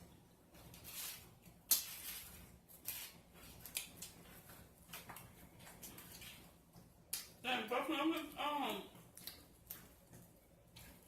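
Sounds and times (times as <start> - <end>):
wet chewing: 8.9 - 11.0.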